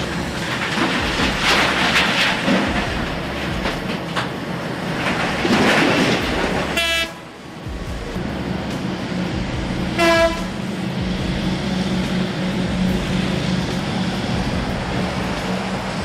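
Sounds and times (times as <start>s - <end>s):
heavy machinery engine running: 0.0s - 16.0s
short horn toot: 6.7s - 7.2s, 10.0s - 10.6s.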